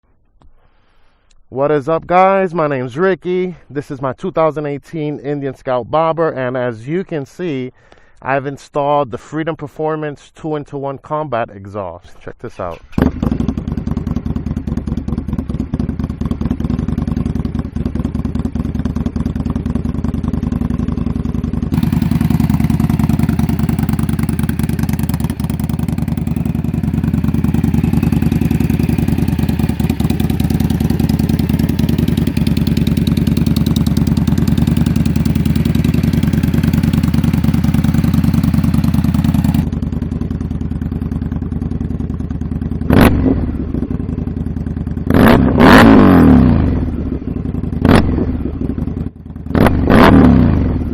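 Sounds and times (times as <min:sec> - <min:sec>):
motorcycle engine idling: 0:12.7 - 0:49.6.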